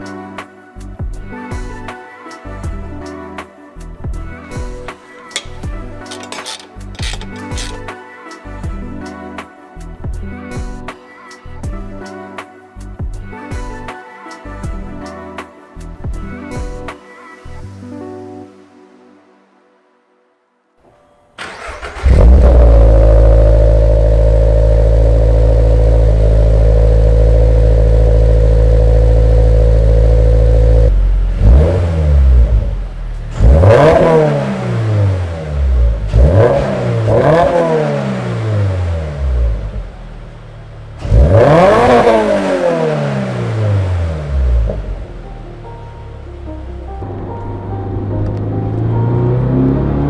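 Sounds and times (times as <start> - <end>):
engine revving: 21.4 - 40.1, 41.0 - 45.0, 47.8 - 50.0
car engine starting: 21.4 - 50.0.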